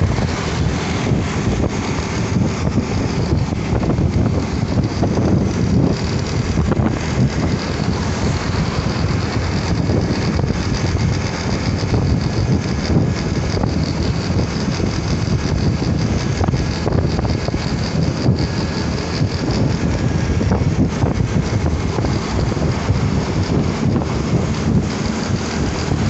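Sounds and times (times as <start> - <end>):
motorcycle engine running: 0.0 - 26.0
road noise: 0.0 - 26.0
wind buffeting microphone: 0.0 - 26.0.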